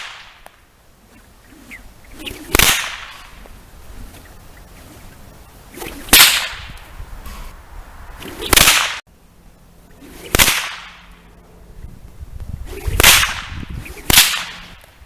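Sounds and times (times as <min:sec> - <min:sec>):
whip cracking: 0:00.0 - 0:03.5, 0:05.7 - 0:06.9, 0:08.2 - 0:09.0, 0:10.0 - 0:11.2, 0:12.6 - 0:15.0
whip lash swish: 0:00.0 - 0:05.1, 0:05.7 - 0:07.4, 0:08.2 - 0:09.0, 0:09.9 - 0:11.0, 0:12.6 - 0:15.0.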